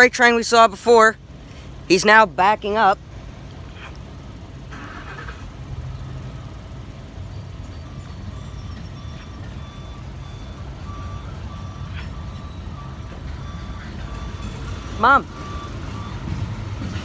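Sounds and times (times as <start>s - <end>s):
diesel locomotives rumbling: 0.0s - 17.0s
thin high tones: 14.4s - 16.5s.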